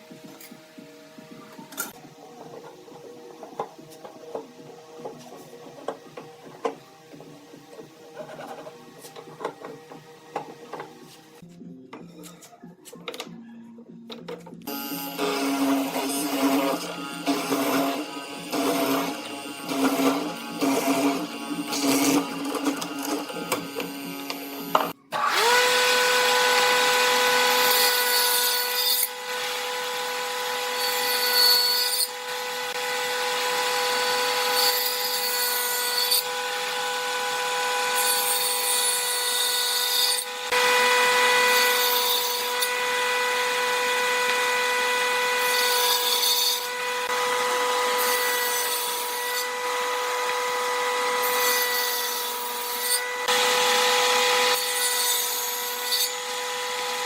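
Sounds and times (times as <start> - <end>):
power tool high whine: 14.7 - 57.0
tool rasping on wood: 15.2 - 29.8.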